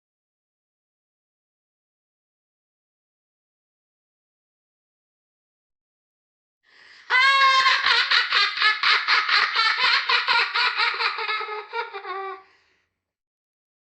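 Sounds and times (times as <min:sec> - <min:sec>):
faint breath: 0:06.7 - 0:07.1, 0:12.4 - 0:13.0
child laughing: 0:07.1 - 0:12.4.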